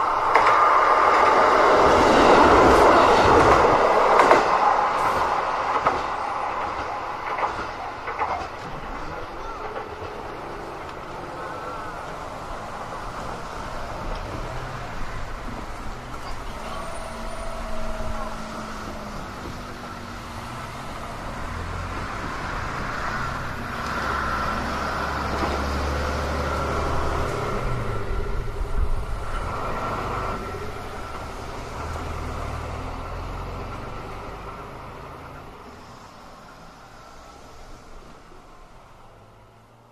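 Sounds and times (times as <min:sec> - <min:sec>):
traffic noise: 0:00.0 - 0:39.9
vehicle engine passing: 0:16.4 - 0:35.2.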